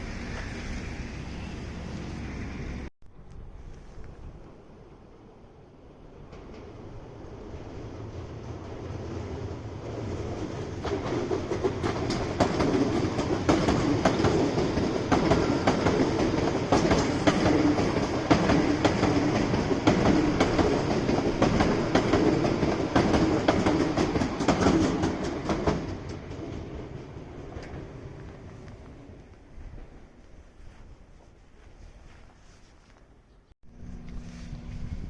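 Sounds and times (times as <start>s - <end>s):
train wheels clicking over joints: 10.3s - 29.0s.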